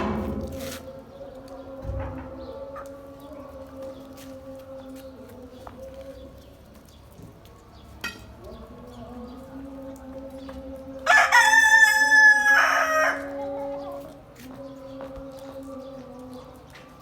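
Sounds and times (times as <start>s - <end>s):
rooster crowing: 11.0s - 13.5s.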